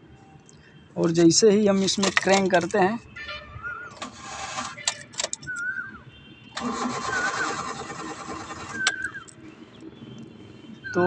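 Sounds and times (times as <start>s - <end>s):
starter cranking engine: 4.0s - 5.5s, 6.6s - 9.3s.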